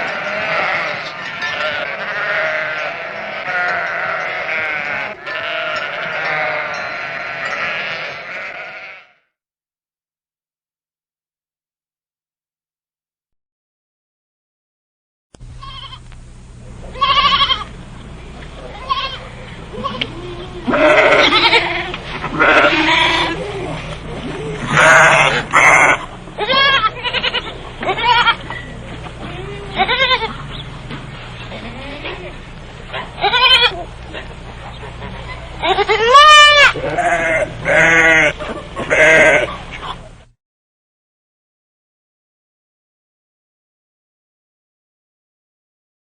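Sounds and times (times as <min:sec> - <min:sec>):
sheep bleating: 0:00.0 - 0:09.3, 0:15.6 - 0:16.0, 0:16.9 - 0:17.7, 0:18.7 - 0:23.9, 0:24.6 - 0:28.5, 0:29.2 - 0:30.4, 0:31.4 - 0:33.9, 0:35.0 - 0:39.6.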